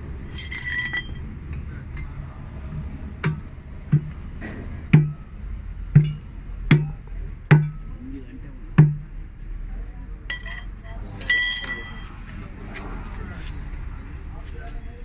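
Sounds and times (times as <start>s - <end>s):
ringing metal clink: 0.2s - 2.3s, 10.3s - 12.2s.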